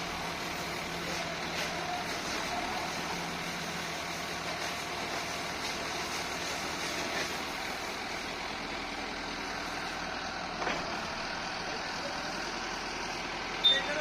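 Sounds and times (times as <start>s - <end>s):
tractor engine running: 0.0s - 14.0s.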